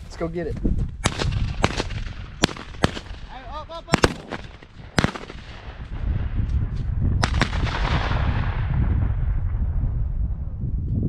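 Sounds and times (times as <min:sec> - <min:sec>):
low rumbling noise: 0:00.9 - 0:11.0
shotgun shots: 0:01.0 - 0:05.9, 0:07.2 - 0:08.7.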